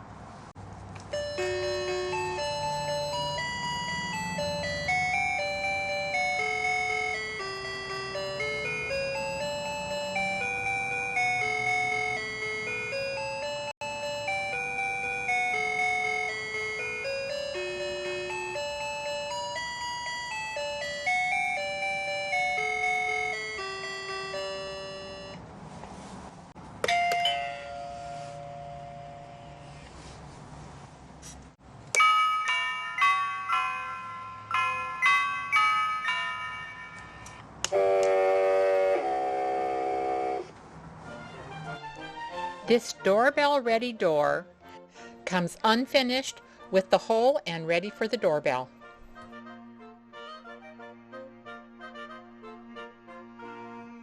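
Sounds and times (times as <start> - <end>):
electronic doorbell melody: 1.1 - 25.4, 26.9 - 29.6, 32.0 - 37.4.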